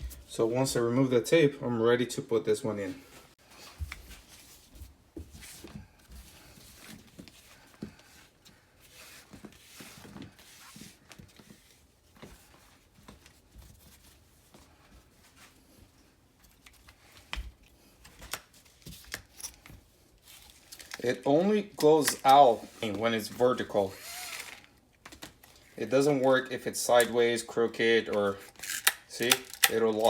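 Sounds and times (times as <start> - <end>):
strap rustling: 2.9 - 26.4.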